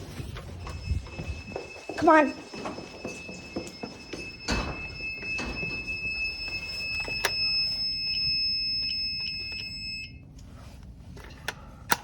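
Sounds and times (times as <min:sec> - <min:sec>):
high-pitched alarm tone: 0:00.0 - 0:10.2.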